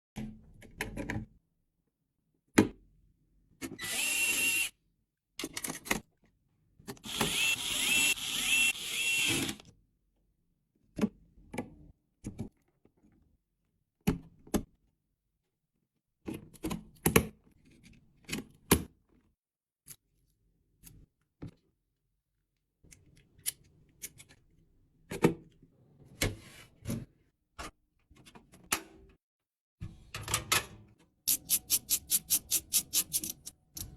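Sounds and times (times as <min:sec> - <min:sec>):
small power tool running: 0:03.8 - 0:04.7, 0:07.0 - 0:09.6.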